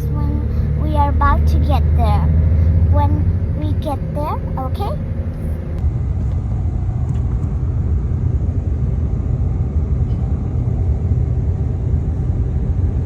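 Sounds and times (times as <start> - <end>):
moving bus rumble: 0.0 - 13.0.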